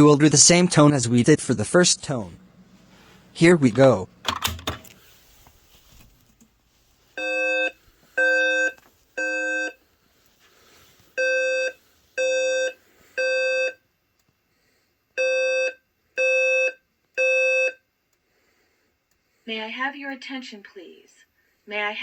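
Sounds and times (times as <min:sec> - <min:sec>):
fire alarm beeps: 0:07.2 - 0:09.8, 0:11.2 - 0:13.8, 0:15.2 - 0:17.8.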